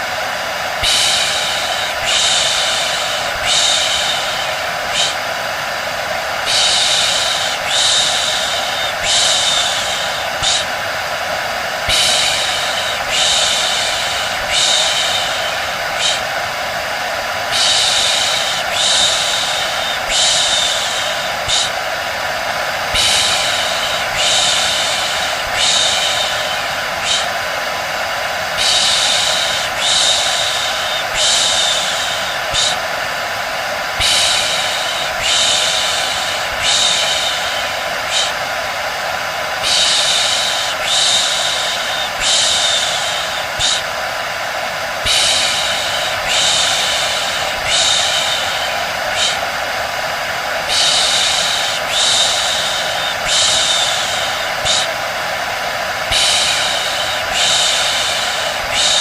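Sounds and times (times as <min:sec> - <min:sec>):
hair dryer running: 0:00.0 - 0:59.0
person shushing: 0:00.8 - 0:05.4, 0:11.8 - 0:16.4, 0:17.4 - 0:21.9, 0:22.8 - 0:27.5, 0:34.0 - 0:38.5, 0:45.0 - 0:49.6, 0:50.6 - 0:55.1, 0:56.0 - 0:59.0.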